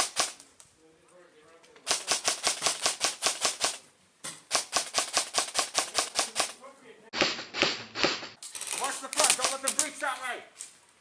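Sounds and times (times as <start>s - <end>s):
airsoft rifle firing bursts: 0.0s - 0.4s, 1.9s - 3.8s, 4.5s - 6.6s, 9.2s - 9.7s.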